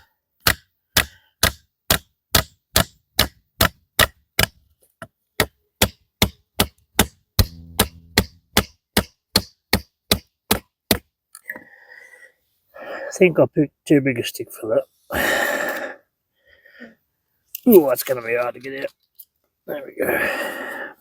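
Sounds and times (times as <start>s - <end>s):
wooden stick knocking on knife: 7.4s - 8.4s.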